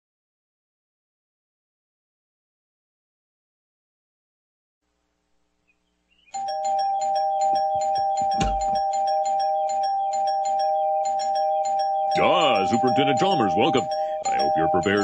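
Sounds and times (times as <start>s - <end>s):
cartoon doorbell ringing: 6.4s - 15.0s.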